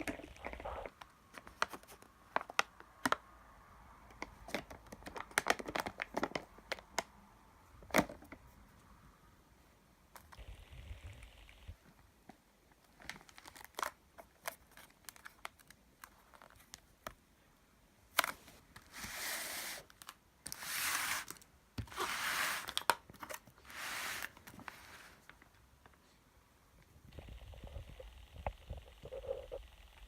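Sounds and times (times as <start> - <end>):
packaging clicks and rustles: 0.0 - 3.2, 4.2 - 7.1, 12.8 - 17.2, 21.2 - 25.5.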